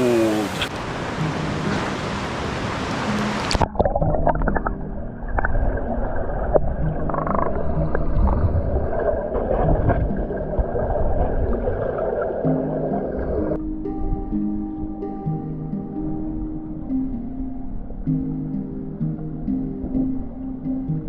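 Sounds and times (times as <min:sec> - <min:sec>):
rushing river water: 0:00.0 - 0:13.6
muffled underwater rumble: 0:00.0 - 0:15.2
low background music: 0:01.0 - 0:21.0.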